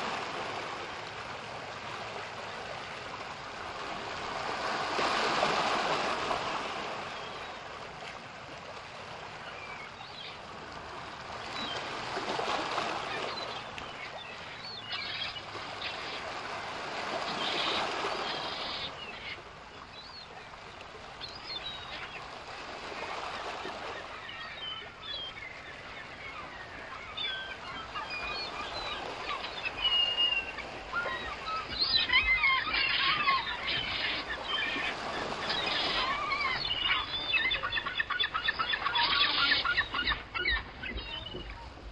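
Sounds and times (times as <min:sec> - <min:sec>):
ocean waves washing: 0:00.0 - 0:41.9
seagulls calling: 0:11.4 - 0:20.6, 0:21.2 - 0:41.9.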